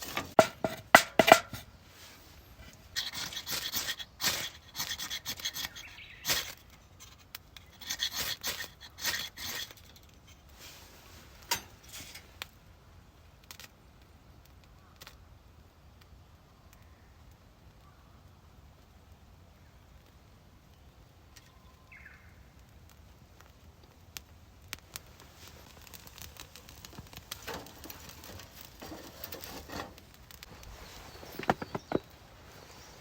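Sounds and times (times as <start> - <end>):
clicks and knocks: 0.0 - 1.6, 31.1 - 32.1
handling noise: 0.0 - 2.8, 25.1 - 33.0
rough scraping and rubbing: 0.0 - 6.7, 7.7 - 12.4, 25.2 - 33.0.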